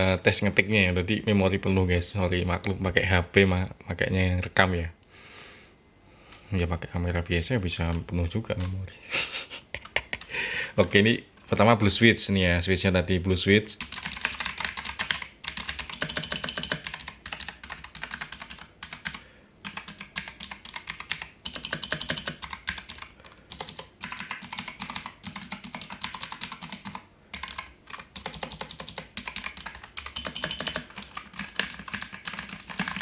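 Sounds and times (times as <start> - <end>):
mechanical keyboard clicking: 13.8 - 33.0.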